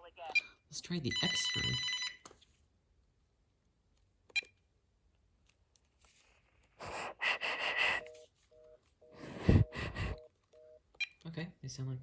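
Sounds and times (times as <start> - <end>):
breath-like noisy rush: 6.8 - 8.1, 9.2 - 10.2
phone fast-busy tone: 7.4 - 10.8.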